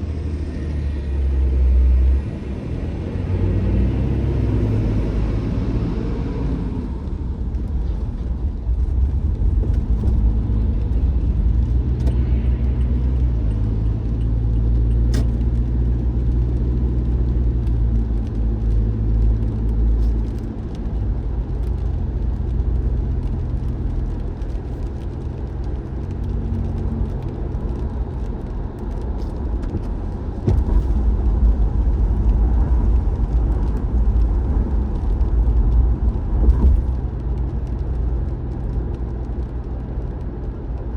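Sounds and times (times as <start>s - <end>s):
car engine and road rumble: 0.0s - 40.9s.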